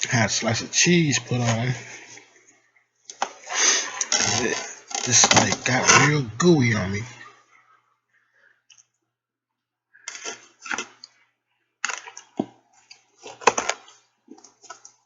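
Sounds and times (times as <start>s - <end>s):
wet chewing and mouth smacking: 11.8s - 15.0s.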